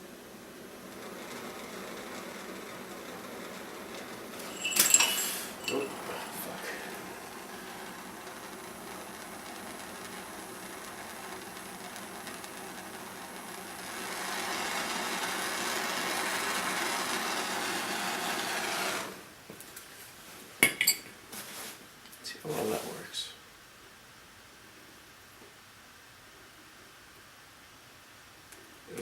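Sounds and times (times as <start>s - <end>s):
gas torch flame hissing: 0.0s - 19.4s
sharp metallic clinks: 4.4s - 6.0s.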